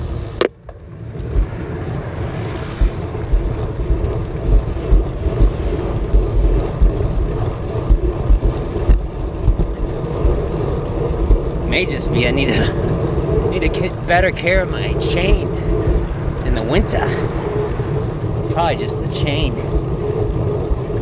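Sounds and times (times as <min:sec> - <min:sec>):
road and traffic noise: 0:00.0 - 0:21.0
wind buffeting microphone: 0:00.0 - 0:21.0.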